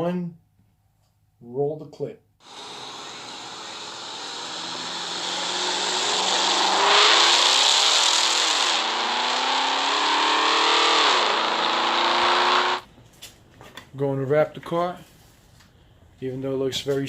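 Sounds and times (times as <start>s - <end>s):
car engine accelerating hard: 2.4s - 12.8s.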